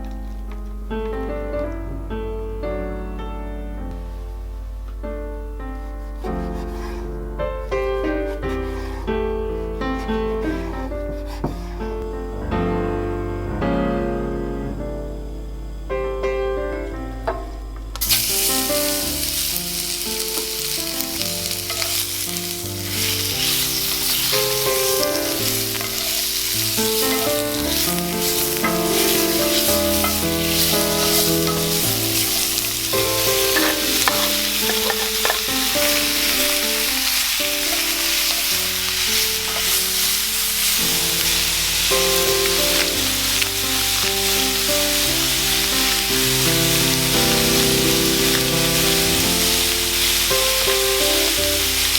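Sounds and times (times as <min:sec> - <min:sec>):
piano music: 0:00.0 - 0:51.9
food sizzling in a frying pan: 0:18.0 - 0:51.9.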